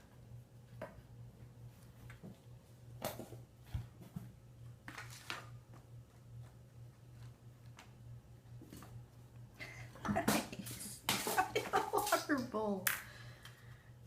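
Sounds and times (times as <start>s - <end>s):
steady low hum: 0.0s - 14.0s
kittens paws scratching and tapping: 3.0s - 9.4s, 10.0s - 12.6s.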